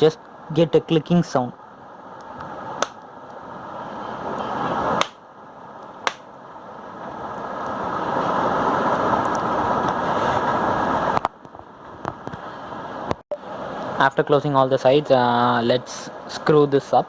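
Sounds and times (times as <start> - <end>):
plastic clips snapping: 2.8 - 3.0, 5.0 - 5.2, 6.1 - 6.3.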